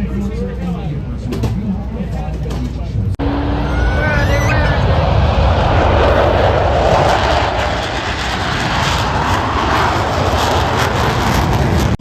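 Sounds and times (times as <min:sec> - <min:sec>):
plane flying past: 0:03.2 - 0:11.9.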